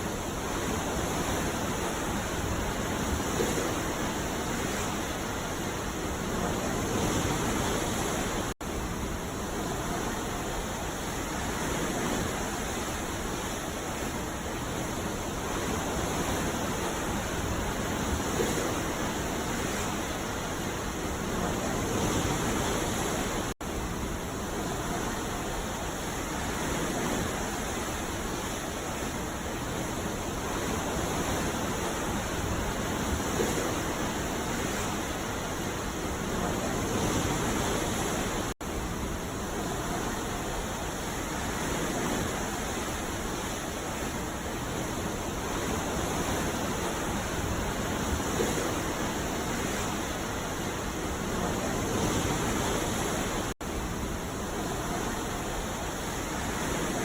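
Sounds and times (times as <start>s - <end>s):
ocean waves washing: 0.0s - 57.0s.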